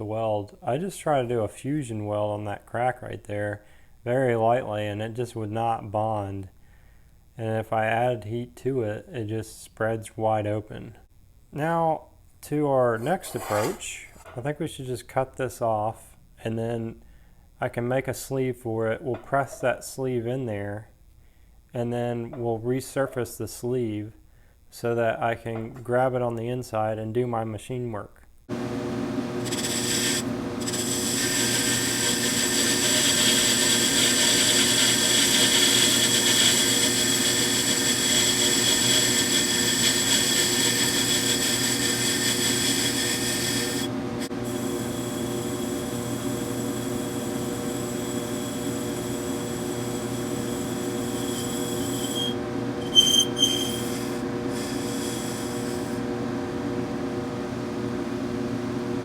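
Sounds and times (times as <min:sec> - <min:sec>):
machine tool cutting metal: 0:29.4 - 0:56.0
brief squeals: 0:51.3 - 0:55.5.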